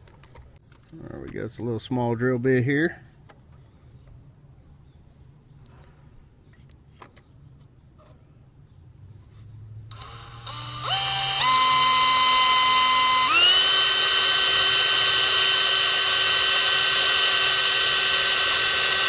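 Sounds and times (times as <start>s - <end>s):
electric drill whining: 9.9s - 19.0s.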